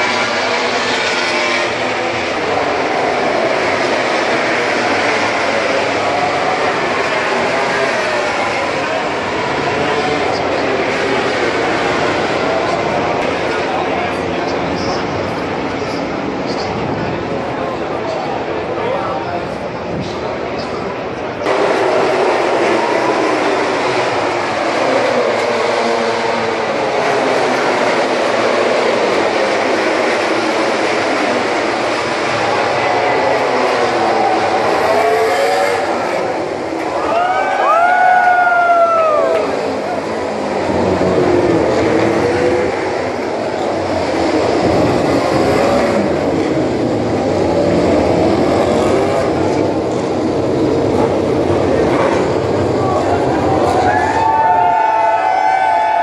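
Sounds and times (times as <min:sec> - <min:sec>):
racing motorcycle engines revving: 0:00.0 - 0:56.0.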